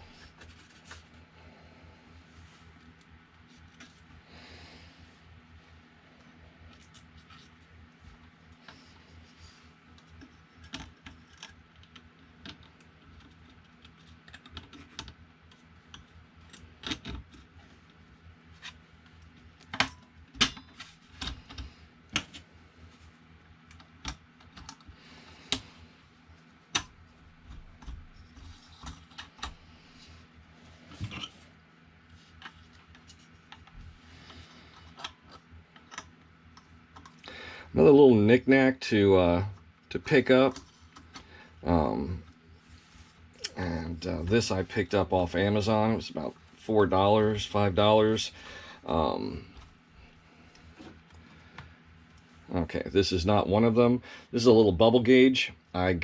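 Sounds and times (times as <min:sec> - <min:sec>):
faint low hum: 0:00.0 - 0:56.0
small parts and tools clicking: 0:10.0 - 0:17.5, 0:32.3 - 0:37.3.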